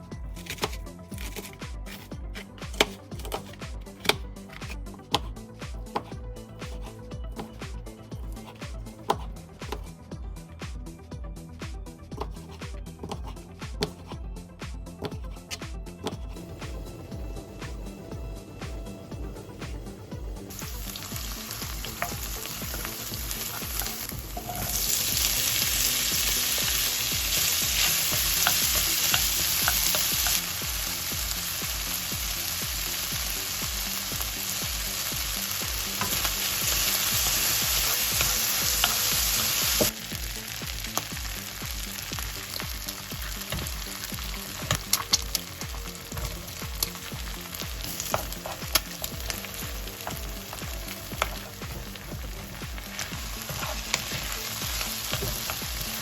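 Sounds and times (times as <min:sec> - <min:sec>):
food sizzling in a pan: 0:20.5 - 0:56.0
utensil tapping a pan: 0:20.6 - 0:30.5.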